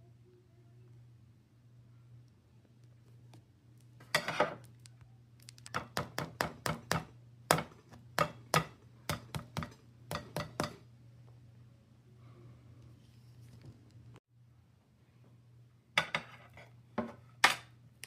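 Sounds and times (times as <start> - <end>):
kitchenware clattering: 4.0 - 4.6, 5.8 - 10.8, 16.0 - 17.8
kitchenware sharp strikes: 5.8 - 10.8.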